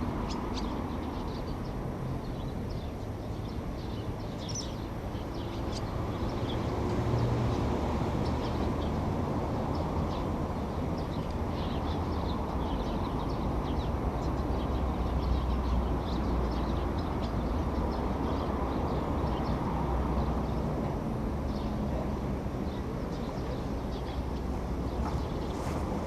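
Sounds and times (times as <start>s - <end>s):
swifts calling: 0.0s - 7.6s, 22.6s - 26.0s.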